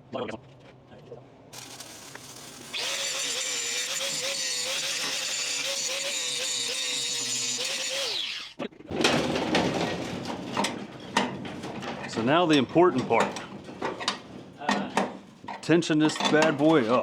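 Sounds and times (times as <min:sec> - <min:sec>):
welding arc crackling: 0:01.6 - 0:08.1
metal clanks: 0:08.9 - 0:17.0.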